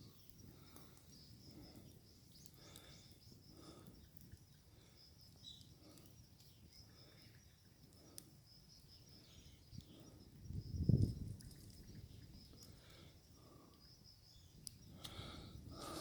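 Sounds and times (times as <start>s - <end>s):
high chirping of birds or insects: 0.0s - 16.0s
faint clicks: 0.2s - 4.6s, 7.8s - 8.3s, 14.6s - 15.4s.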